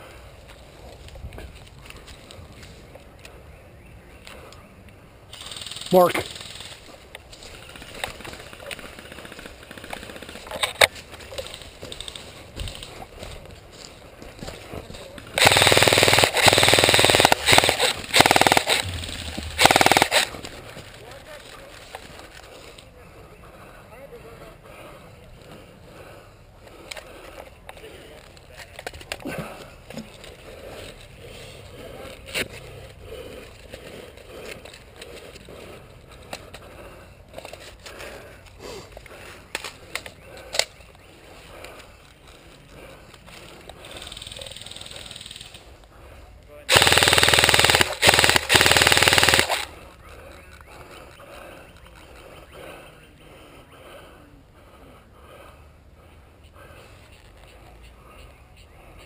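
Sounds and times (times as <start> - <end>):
airsoft gun automatic bursts: 5.4 - 6.8, 7.6 - 10.8, 15.4 - 20.4, 46.7 - 49.7.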